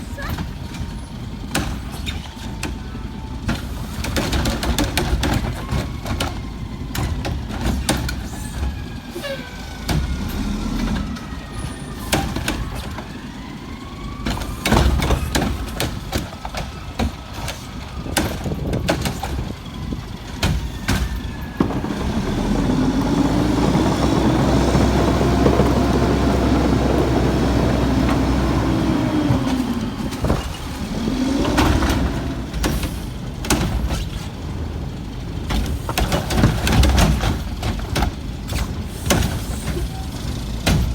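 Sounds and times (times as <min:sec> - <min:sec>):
garbage truck bangs and clatter: 0:00.0 - 0:40.9
truck engine revving: 0:08.4 - 0:40.9.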